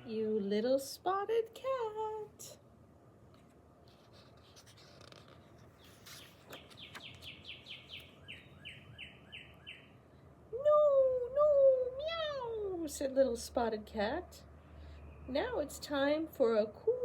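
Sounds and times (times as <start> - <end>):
bird singing faintly: 5.7 - 10.0.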